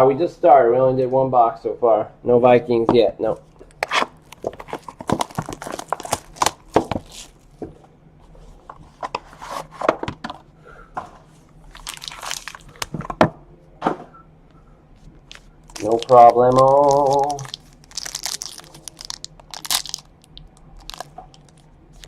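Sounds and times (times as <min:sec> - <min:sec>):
packaging crinkling and tearing: 0:03.6 - 0:07.5, 0:11.7 - 0:13.0, 0:15.2 - 0:22.0.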